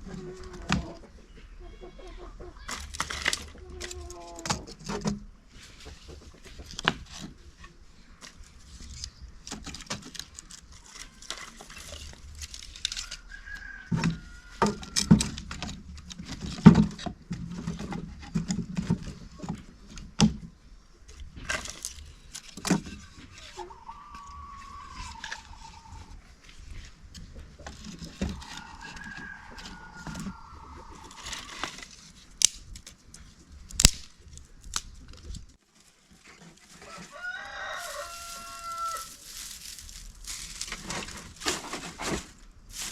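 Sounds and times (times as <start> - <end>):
objects being handled: 2.6 - 42.9
falling bird calls: 22.8 - 26.3, 28.0 - 31.9, 37.1 - 42.9.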